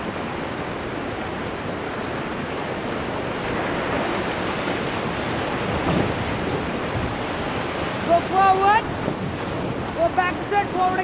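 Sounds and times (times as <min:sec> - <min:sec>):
river water rushing: 0:00.0 - 0:11.0.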